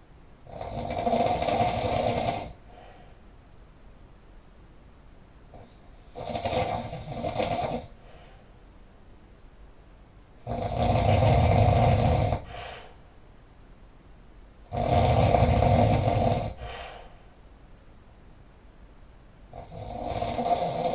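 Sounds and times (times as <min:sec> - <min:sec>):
loud snoring: 0:00.4 - 0:02.6, 0:05.5 - 0:08.0, 0:10.4 - 0:12.8, 0:14.7 - 0:16.9, 0:19.5 - 0:20.9.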